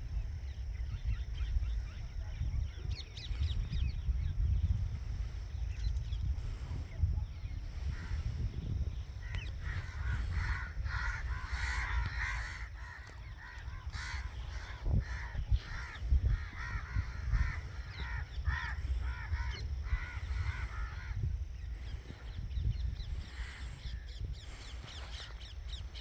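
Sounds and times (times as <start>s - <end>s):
steady low rumble: 0.0s - 26.0s
crows cawing: 9.2s - 21.3s.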